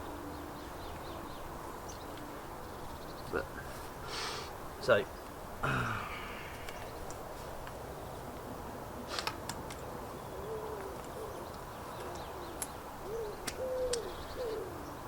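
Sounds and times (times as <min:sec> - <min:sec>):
bird cooing: 0:10.2 - 0:15.0.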